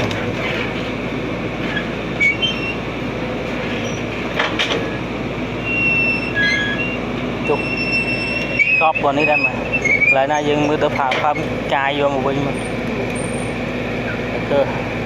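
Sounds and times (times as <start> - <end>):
excavator machine noise: 0.0 - 15.0
high metallic squeals: 1.6 - 2.9, 3.6 - 4.2, 5.6 - 11.5, 12.5 - 14.3.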